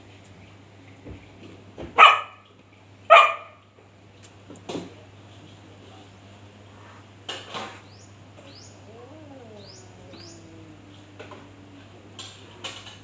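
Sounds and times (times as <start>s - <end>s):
dog barking: 2.0s - 2.4s, 3.1s - 3.6s, 8.4s - 12.0s
dog chirping: 8.4s - 12.1s
dog whining: 8.4s - 13.0s.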